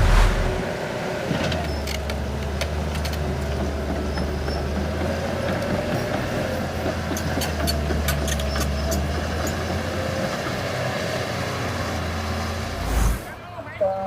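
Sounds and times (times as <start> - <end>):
heavy diesel engine droning: 0.0 - 1.3.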